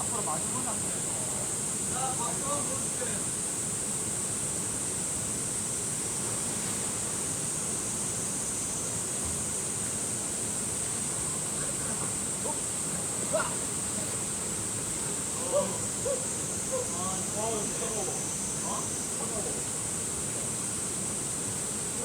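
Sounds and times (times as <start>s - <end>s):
stream water rushing: 0.0s - 22.0s
voices calling faintly: 11.2s - 19.7s.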